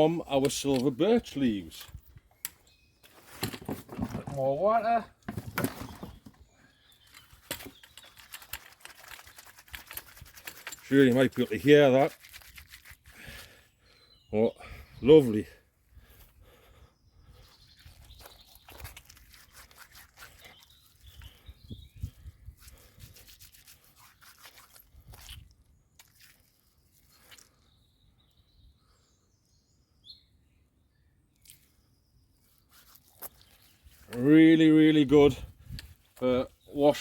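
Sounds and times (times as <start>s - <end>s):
soft bird chirps: 0.0s - 4.0s, 5.7s - 37.0s
wet leaves squelching: 8.2s - 13.4s, 17.8s - 21.1s, 22.6s - 27.6s, 32.6s - 34.2s.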